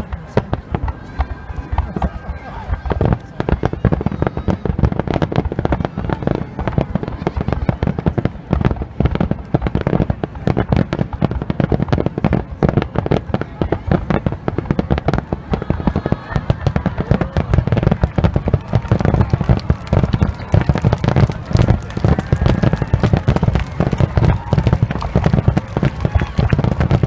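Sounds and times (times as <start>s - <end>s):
fireworks bursting: 0.0s - 27.0s.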